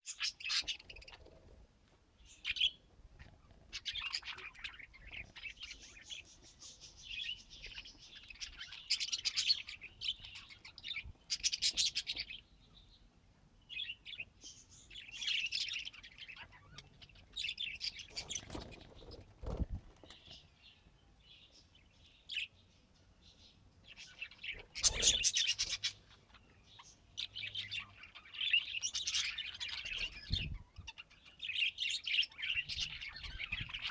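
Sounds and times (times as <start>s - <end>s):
budgerigars chirping: 0.1s - 1.2s, 3.7s - 12.8s, 13.7s - 20.4s, 23.8s - 33.9s.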